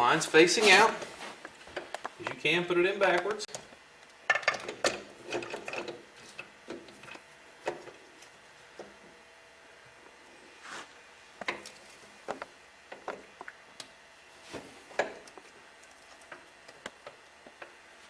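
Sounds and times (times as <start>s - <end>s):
metal parts clicking and scraping: 4.3s - 8.4s.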